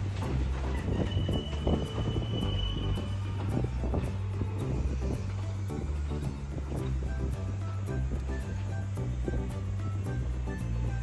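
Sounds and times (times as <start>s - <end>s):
electric train rumbling past: 0.0s - 10.5s
music: 0.0s - 11.0s
high-pitched wheel squeal: 0.1s - 6.2s.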